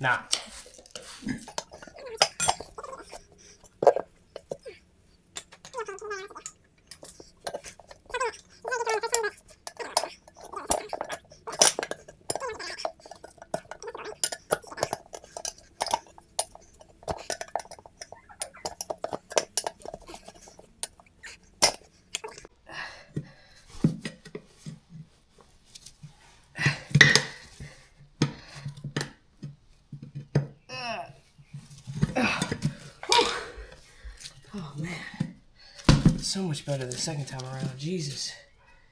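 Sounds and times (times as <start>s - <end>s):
metal tools clinking on wheel rim: 0.6s - 22.5s, 36.4s - 38.3s.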